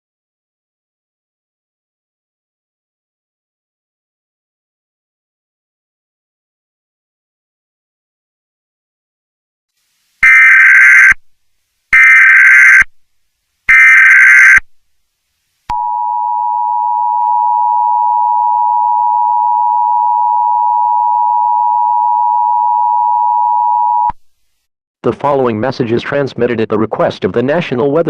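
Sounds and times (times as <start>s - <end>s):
screeching digital data bursts: 10.2s - 11.2s, 12.0s - 12.9s, 13.7s - 14.6s
steady two-tone attention signal: 10.2s - 11.2s, 13.7s - 14.6s.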